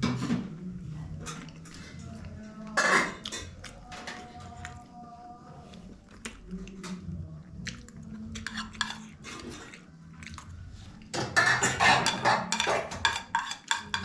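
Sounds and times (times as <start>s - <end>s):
cutlery clinking on plates: 11.2s - 14.0s.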